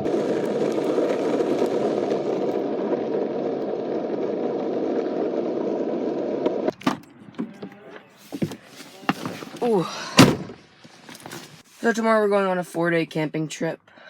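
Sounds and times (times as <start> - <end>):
longboard wheels rolling on pavement: 0.0 - 7.6, 8.2 - 9.8.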